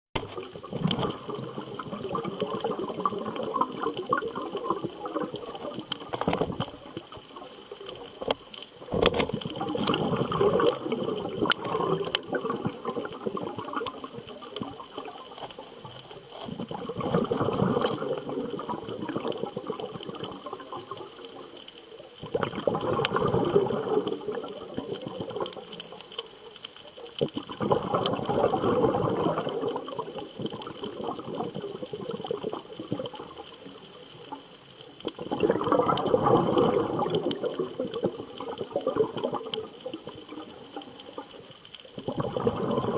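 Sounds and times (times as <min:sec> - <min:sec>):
bubbles gurgling underwater: 0:00.2 - 0:26.2, 0:27.0 - 0:42.9.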